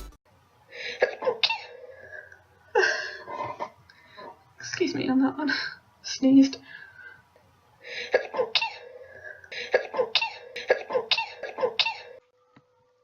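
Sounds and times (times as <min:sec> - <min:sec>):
person coughing: 0:00.9 - 0:01.8, 0:08.0 - 0:12.2.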